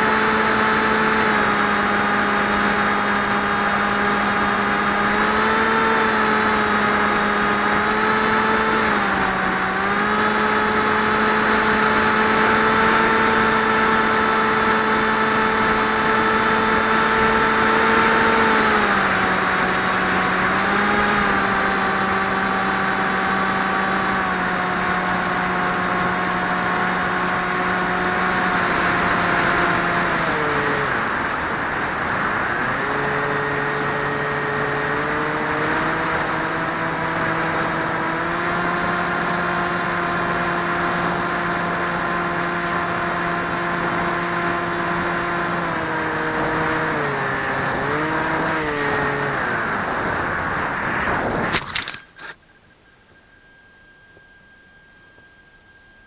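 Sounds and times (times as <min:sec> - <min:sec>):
electric motor propeller drone: 0:00.0 - 0:56.0
rushing air: 0:49.4 - 0:54.5.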